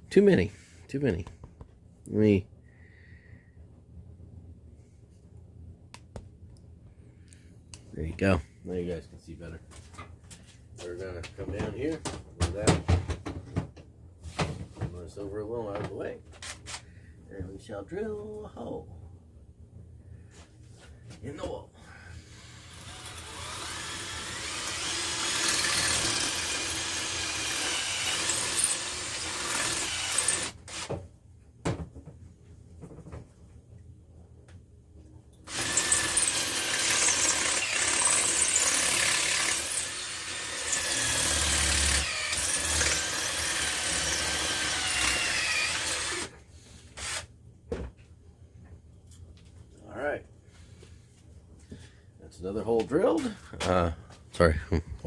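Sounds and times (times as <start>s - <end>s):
power drill boring into wall: 22.2s - 31.0s, 35.5s - 46.4s, 47.0s - 47.3s.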